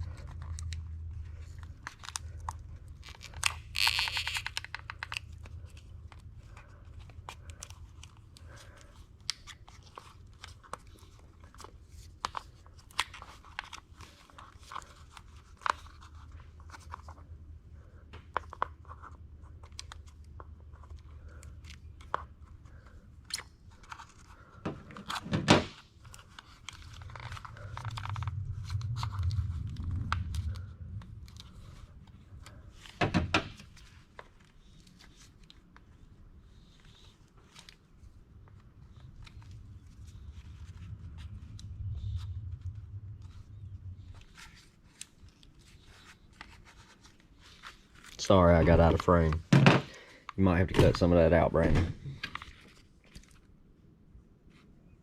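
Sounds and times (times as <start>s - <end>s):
vinyl film crinkling: 0.0s - 17.4s, 26.0s - 49.4s, 52.2s - 53.7s.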